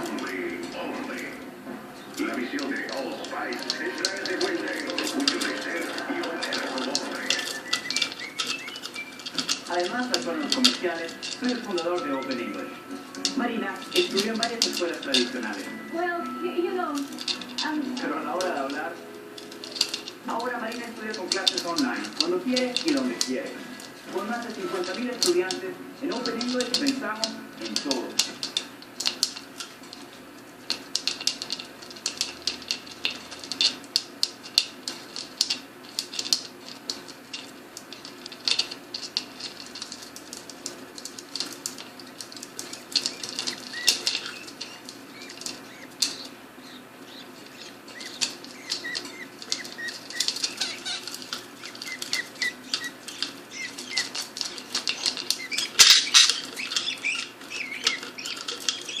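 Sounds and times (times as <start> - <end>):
budgerigars chattering: 2.0 - 12.6, 42.0 - 59.0.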